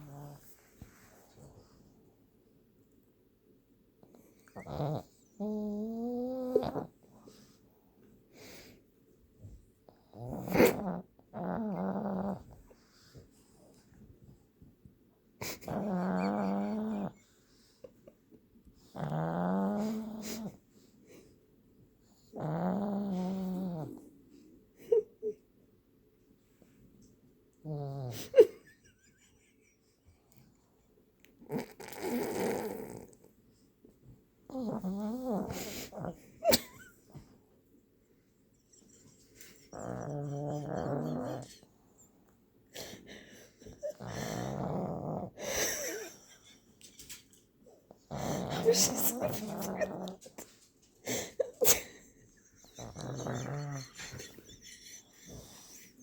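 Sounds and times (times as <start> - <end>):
dog snoring: 4.4 - 6.9, 9.9 - 12.6, 15.4 - 17.3, 18.8 - 20.6, 22.1 - 24.1, 27.6 - 28.4, 31.4 - 33.2, 34.5 - 36.2, 38.9 - 41.7, 42.9 - 46.1, 48.0 - 50.2, 52.6 - 56.0.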